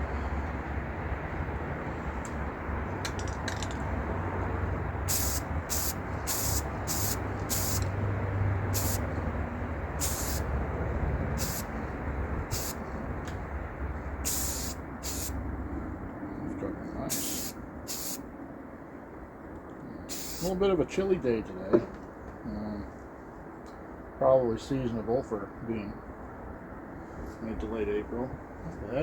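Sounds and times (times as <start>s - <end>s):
steady low rumble: 0.0s - 29.0s
spray paint can hissing: 5.0s - 7.9s, 8.7s - 9.2s, 10.0s - 10.5s, 11.3s - 11.7s, 12.5s - 12.8s, 14.2s - 15.4s, 17.1s - 18.2s, 20.1s - 20.5s.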